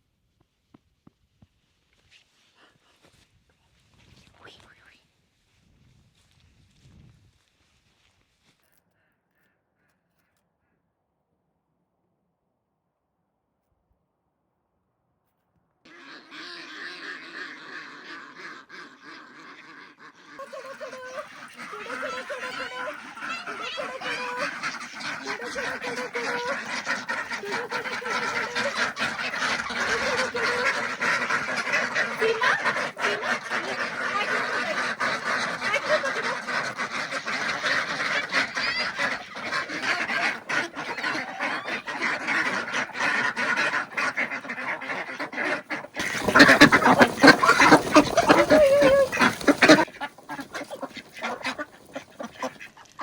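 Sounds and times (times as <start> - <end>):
ducks quacking: 15.9 - 53.0.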